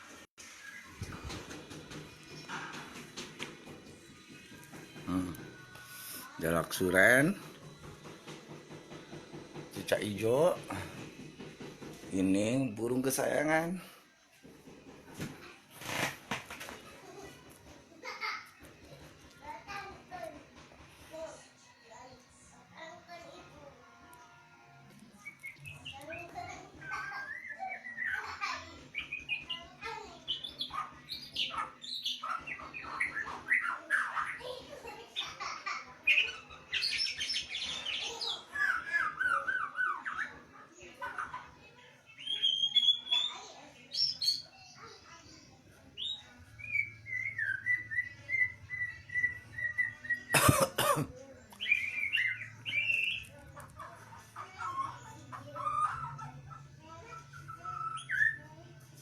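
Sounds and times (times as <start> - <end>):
songbird singing: 51.6 - 58.5
songbird warbling and whistling: 57.2 - 58.5.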